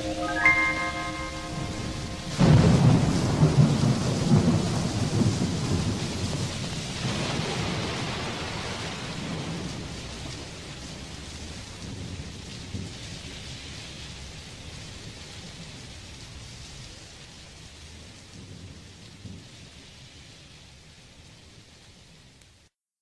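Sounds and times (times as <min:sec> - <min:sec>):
steady rain: 0:00.0 - 0:22.7
thunder rumbling: 0:01.6 - 0:13.4.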